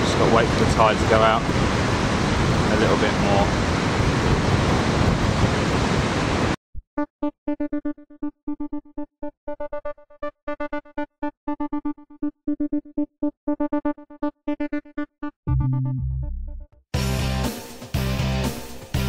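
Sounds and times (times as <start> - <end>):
surf: 0.0 - 6.6
wind buffeting microphone: 0.0 - 6.6
keyboard music repeated notes: 7.0 - 19.0.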